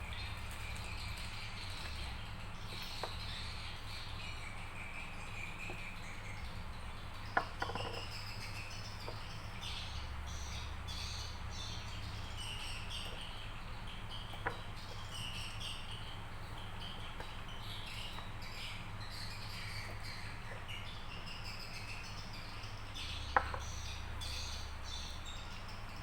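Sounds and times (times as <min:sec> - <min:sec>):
birds chirping: 0:00.0 - 0:26.0
steady low hum: 0:00.0 - 0:26.0.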